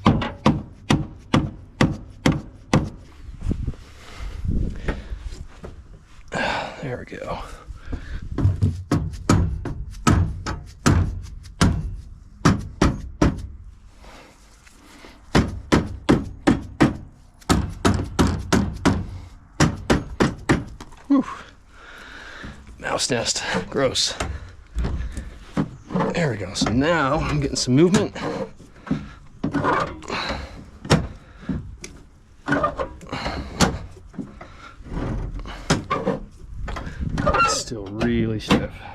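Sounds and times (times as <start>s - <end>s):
metal latch scraping: 23.4s - 28.6s, 29.4s - 30.1s, 32.4s - 33.9s, 34.9s - 38.7s.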